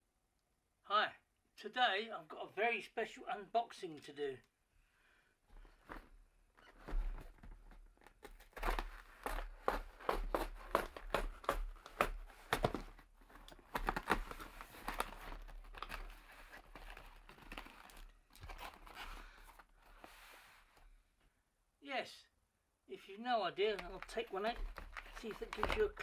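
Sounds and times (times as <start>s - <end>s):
packaging crinkling and tearing: 6.6s - 20.2s, 23.7s - 26.0s.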